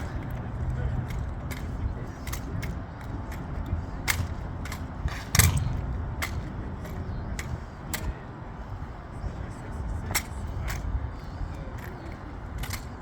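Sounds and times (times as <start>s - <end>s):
rifles slapped and caught: 4.1s - 8.1s.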